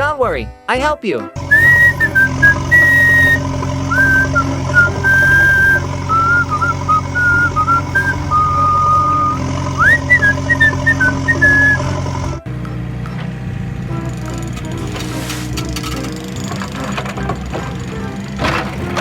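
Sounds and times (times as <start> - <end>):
person whistling a tune: 1.4 - 12.0
engine running: 1.4 - 19.0.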